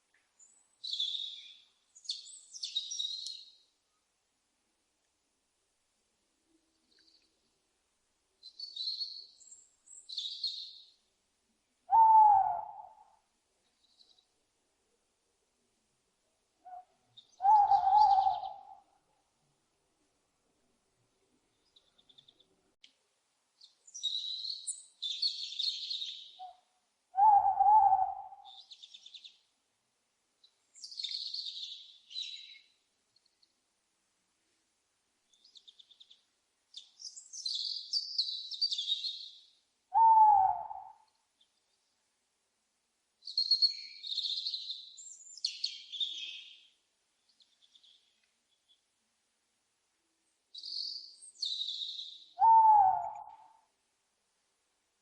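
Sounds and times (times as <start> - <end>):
owl hooting: 11.9 - 13.2, 16.6 - 18.9, 26.4 - 28.7, 39.9 - 41.1, 51.5 - 53.7
high chirping bird calls: 50.6 - 53.4.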